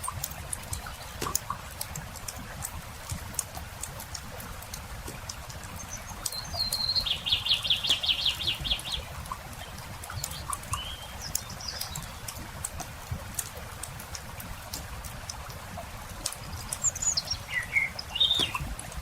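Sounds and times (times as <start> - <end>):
campfire crackling and popping: 0.0 - 19.0
bird chirps: 5.8 - 9.1, 10.2 - 12.2, 16.5 - 18.7
bird singing a fast trill: 5.9 - 9.0, 10.8 - 12.1, 16.8 - 18.6.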